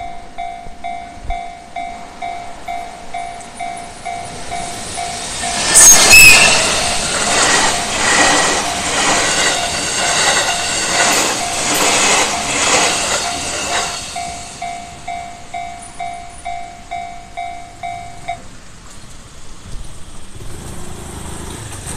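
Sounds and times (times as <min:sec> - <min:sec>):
brief high-pitched tone: 0:00.0 - 0:08.0
train wheel clatter: 0:02.6 - 0:21.9
level crossing bell dinging: 0:09.6 - 0:18.5.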